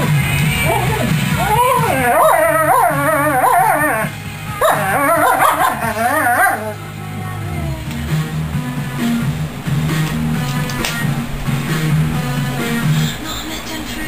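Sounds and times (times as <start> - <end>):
rock song: 0.0 - 13.8
dog whining: 0.6 - 7.9.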